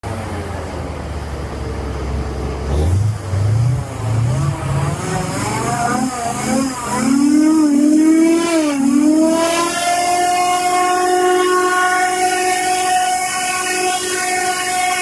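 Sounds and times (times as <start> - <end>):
engine revving: 2.4 - 15.0
high wavering tone: 4.0 - 15.0.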